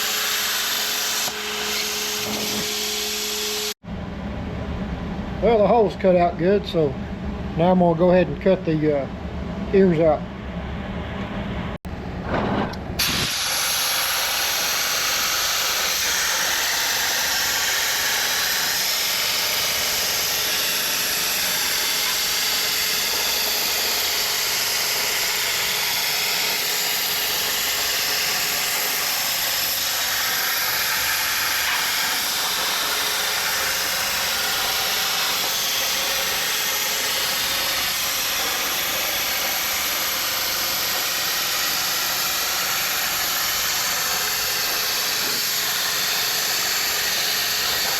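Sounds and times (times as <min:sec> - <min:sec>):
plasma cutter hissing: 0:00.0 - 0:03.7, 0:13.0 - 0:47.9.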